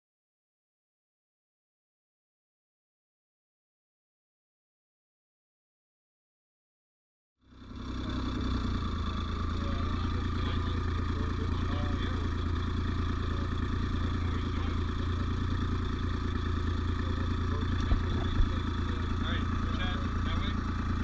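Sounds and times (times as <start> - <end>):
outboard engine running: 7.5 - 21.0.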